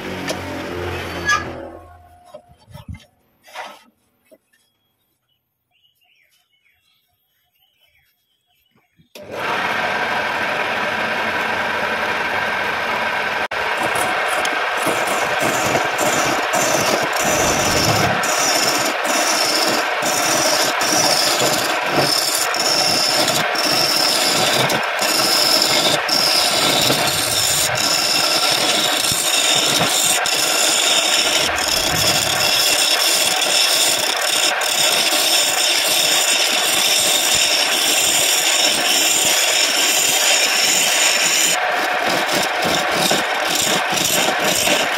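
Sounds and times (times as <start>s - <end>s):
wood lathe running: 9.2s - 44.9s.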